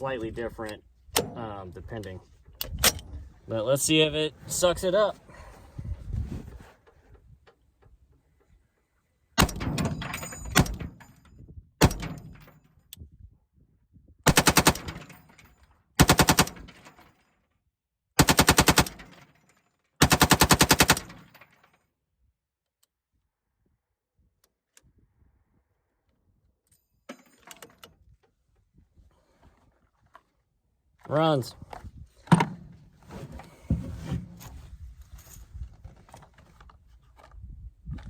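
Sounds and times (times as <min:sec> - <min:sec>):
rifle gunfire bursts: 0:14.3 - 0:15.0, 0:16.0 - 0:16.7, 0:18.2 - 0:19.0, 0:20.0 - 0:21.2.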